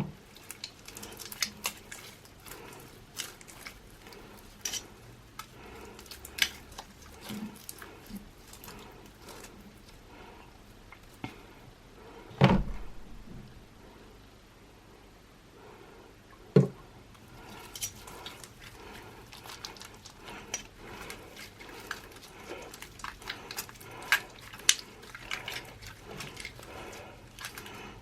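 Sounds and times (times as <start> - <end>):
slime squished by hand: 0.2 - 10.0, 17.2 - 28.0
dull thump: 12.4 - 13.5.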